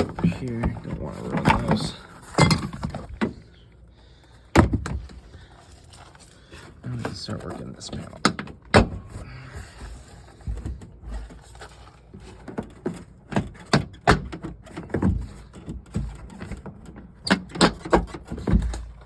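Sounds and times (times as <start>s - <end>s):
hard plastic knocks and scrapes: 0.0s - 3.5s, 9.8s - 19.0s.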